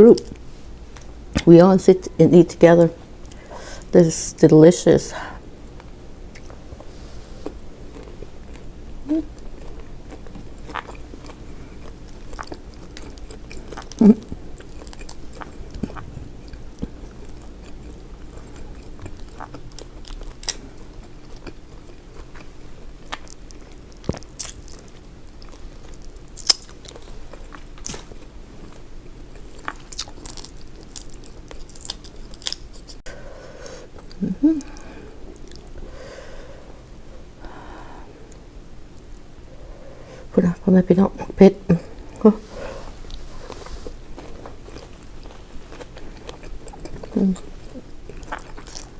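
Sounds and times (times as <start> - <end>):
chewing and biting seafood: 5.7 - 33.0, 42.0 - 48.9.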